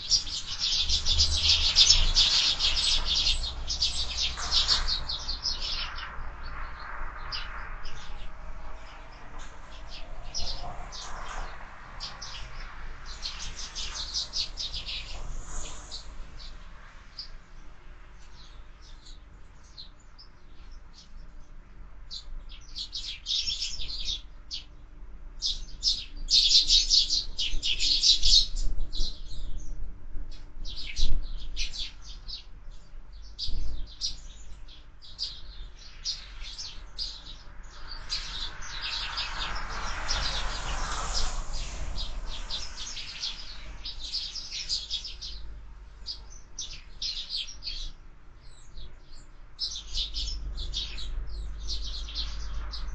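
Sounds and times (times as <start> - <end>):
broad rushing noise: 0.0 - 17.9, 36.4 - 46.2
sparrows chirping: 0.0 - 52.9.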